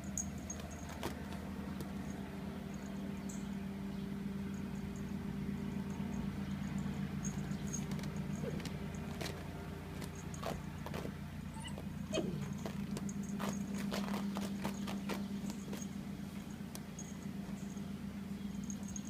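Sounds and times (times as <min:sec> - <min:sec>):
steady low hum: 0:00.0 - 0:19.0
scratching on a cushion: 0:07.6 - 0:17.8.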